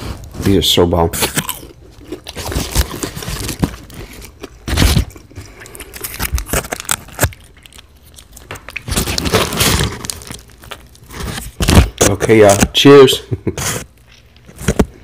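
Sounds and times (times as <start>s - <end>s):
chewing and crunching food: 0.0s - 12.2s
paper wrapper crinkling: 1.2s - 13.0s.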